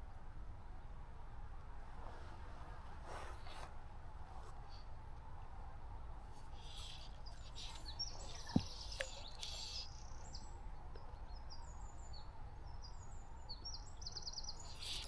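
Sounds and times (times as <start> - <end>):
small birds chirping: 6.3 - 15.0.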